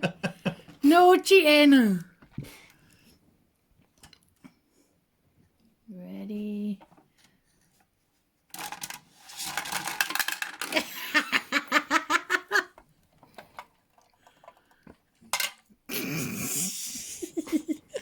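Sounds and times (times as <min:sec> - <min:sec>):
laughter: 0:00.0 - 0:00.8, 0:10.7 - 0:12.8, 0:16.9 - 0:18.0.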